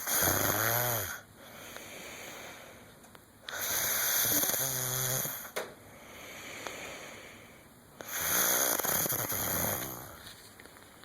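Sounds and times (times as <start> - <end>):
person snoring: 0.0 - 1.2, 3.5 - 5.6, 8.0 - 10.2.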